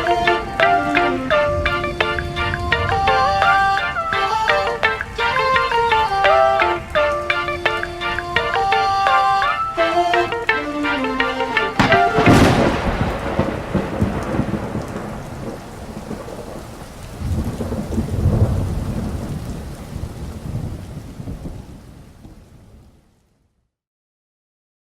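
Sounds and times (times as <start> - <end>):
thunderclap: 0.0 - 5.6, 11.8 - 22.8
rolling thunder rumble: 0.0 - 6.0, 11.8 - 22.7
music: 0.0 - 12.7
rain: 0.0 - 23.7.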